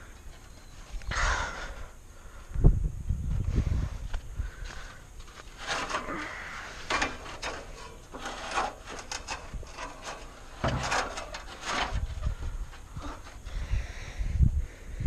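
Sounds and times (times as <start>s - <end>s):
scraping and rubbing: 5.2s - 13.6s.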